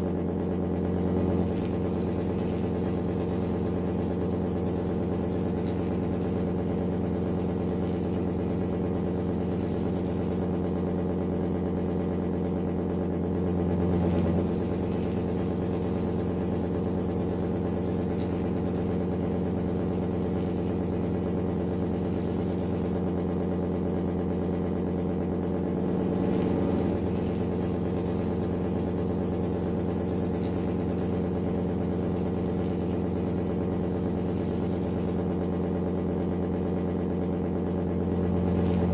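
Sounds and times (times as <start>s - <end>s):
engine idling: 0.0s - 38.9s.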